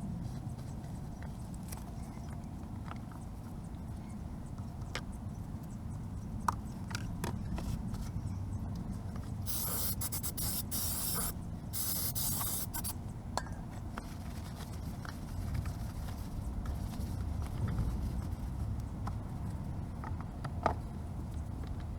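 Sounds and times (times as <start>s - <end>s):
spray hiss: 9.5s - 13.0s.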